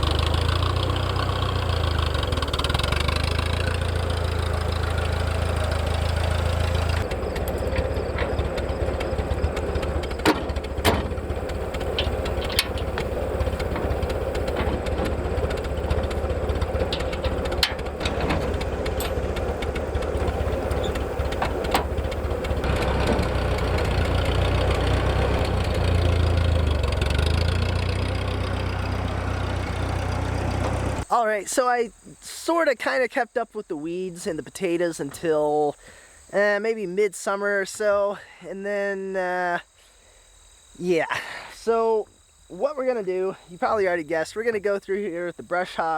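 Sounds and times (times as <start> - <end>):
tractor engine running: 0.0 - 31.1
sharp metallic knocks and clanks: 7.0 - 25.9.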